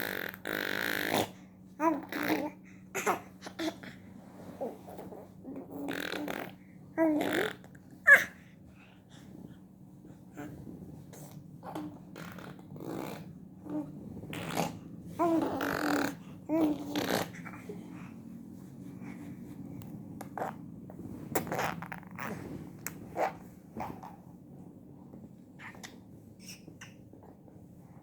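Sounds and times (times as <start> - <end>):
child making lip-trill engine noises: 0.0 - 3.9, 5.6 - 8.4, 14.4 - 17.8.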